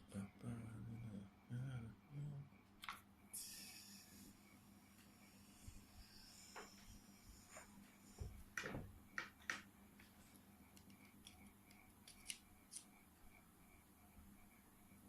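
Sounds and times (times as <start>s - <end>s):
faint clicks and taps: 7.5s - 12.9s.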